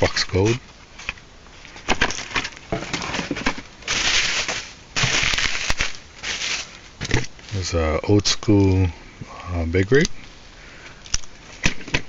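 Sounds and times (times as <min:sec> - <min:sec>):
plastic packaging crinkling: 0:01.8 - 0:07.6.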